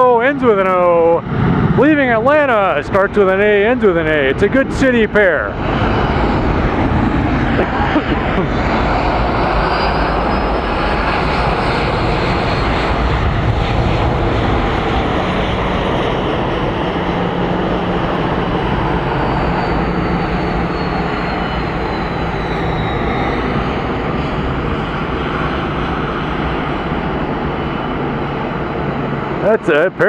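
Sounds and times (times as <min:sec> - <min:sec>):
faint high engine whine: 0:00.0 - 0:30.0
jet engines roaring: 0:00.0 - 0:30.0.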